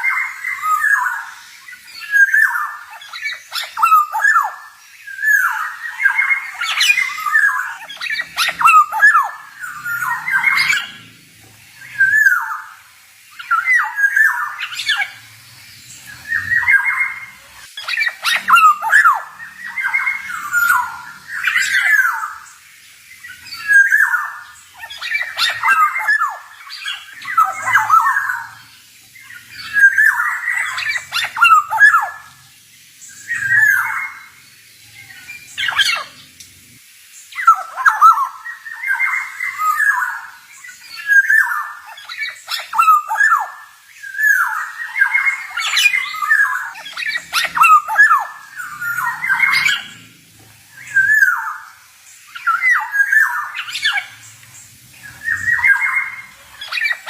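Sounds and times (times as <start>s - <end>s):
oriole whistling song: 41.0s - 50.0s, 50.7s - 51.7s.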